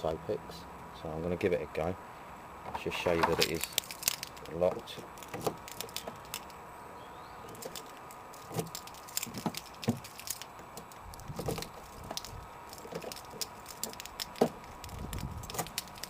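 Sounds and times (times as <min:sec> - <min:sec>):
lock pick clicking and scraping: 0:07.5 - 0:16.0.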